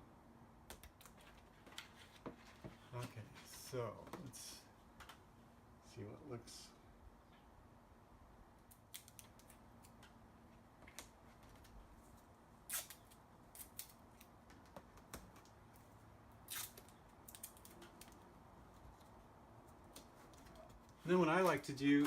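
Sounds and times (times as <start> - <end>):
decal sheet crackling: 10.9 - 22.0.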